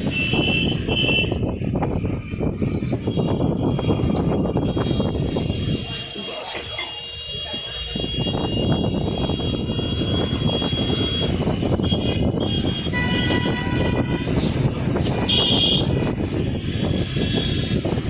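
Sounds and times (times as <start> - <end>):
vehicle horns: 0.0 - 1.7, 2.6 - 18.0
traffic running: 0.0 - 18.0.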